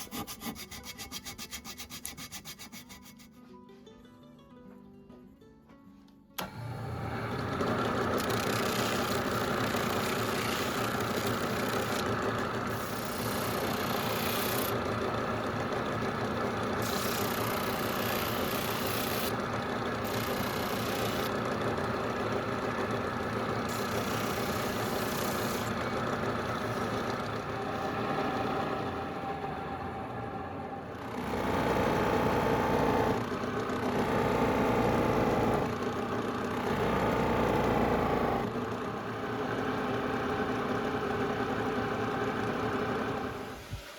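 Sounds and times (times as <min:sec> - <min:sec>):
electric power tool motor running: 0:06.4 - 0:29.1.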